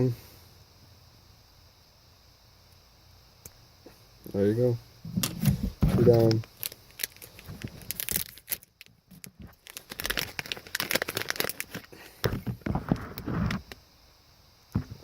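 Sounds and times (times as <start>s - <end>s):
plastic crinkling and tearing: 6.0s - 12.0s.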